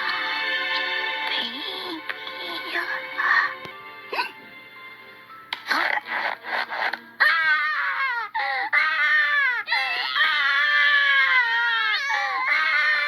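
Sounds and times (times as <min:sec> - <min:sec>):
baby crying: 0:07.2 - 0:13.0.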